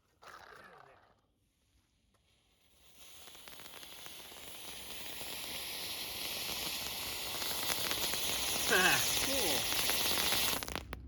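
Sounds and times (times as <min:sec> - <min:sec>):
firework spraying sparks hiss: 0:02.2 - 0:11.0.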